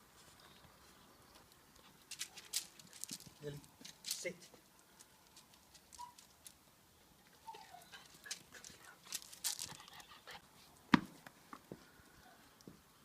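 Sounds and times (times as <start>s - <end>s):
puppy panting: 7.5s - 10.5s.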